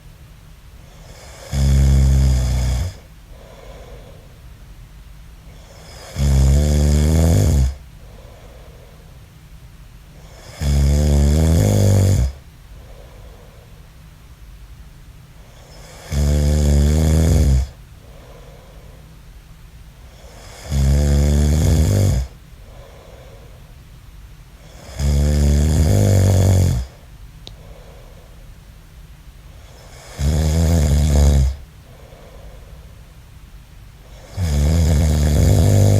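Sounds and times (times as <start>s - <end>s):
quiet breathing: 0.8s - 4.7s, 7.3s - 10.9s, 11.5s - 14.2s, 15.3s - 28.8s, 29.4s - 34.5s
man snoring: 1.0s - 4.2s, 5.6s - 7.8s, 10.2s - 12.4s, 15.6s - 18.5s, 20.1s - 23.3s, 24.6s - 27.0s, 29.6s - 32.4s, 34.1s - 35.9s.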